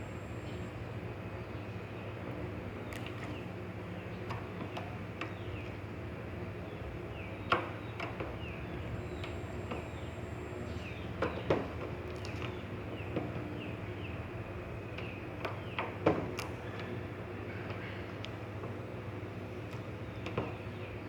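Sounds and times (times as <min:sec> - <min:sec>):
steady low hum: 0:00.0 - 0:01.6, 0:08.4 - 0:11.2.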